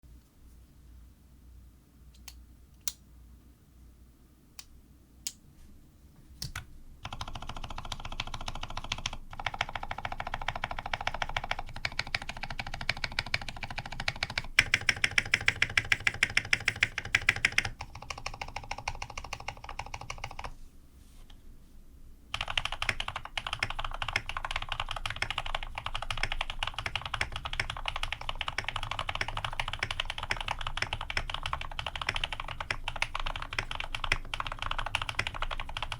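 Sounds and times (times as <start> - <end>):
typing on mechanical keyboard: 6.5 - 20.5, 22.3 - 35.9.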